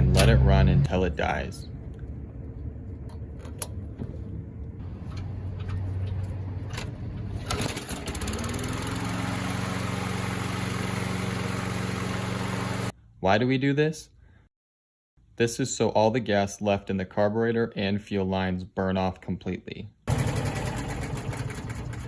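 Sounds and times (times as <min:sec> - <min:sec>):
lawn mower engine running: 0:04.8 - 0:12.9, 0:20.1 - 0:22.0.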